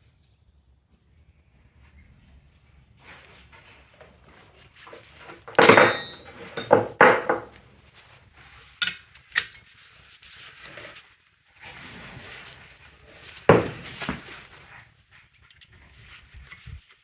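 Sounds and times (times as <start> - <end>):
metal hand tools clanking: 5.2 - 7.5.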